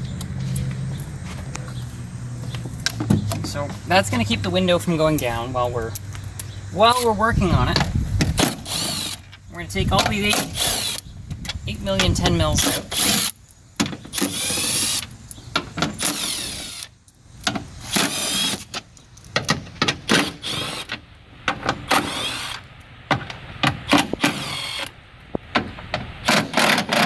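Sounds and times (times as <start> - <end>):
power driver whining: 0.0 - 17.0.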